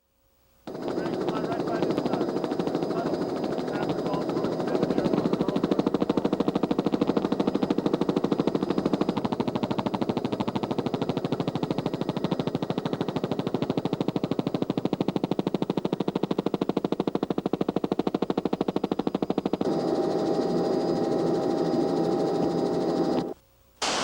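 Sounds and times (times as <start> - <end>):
helicopter rotor chopping: 0.7 - 24.0.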